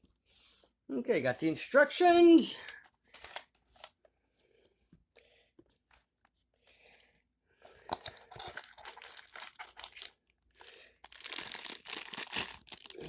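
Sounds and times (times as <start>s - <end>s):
packaging rustling and crinkling: 3.0s - 4.0s, 7.8s - 13.0s.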